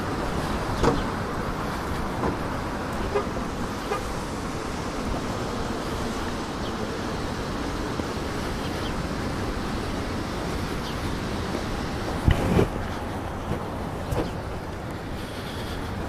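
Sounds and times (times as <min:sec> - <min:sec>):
light rain: 0:00.0 - 0:14.0
wind: 0:00.0 - 0:16.0.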